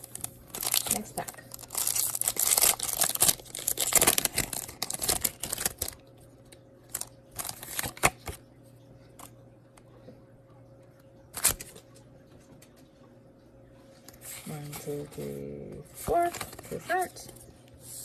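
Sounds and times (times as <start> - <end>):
foil wrapper crinkling and tearing: 0.0 - 6.0, 6.8 - 8.4, 11.3 - 11.8.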